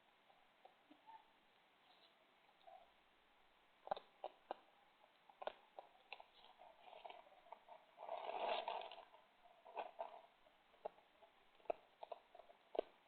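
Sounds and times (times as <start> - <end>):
animals eating with clicks and crunches: 3.8 - 13.0
scratchy rustle: 5.5 - 10.3.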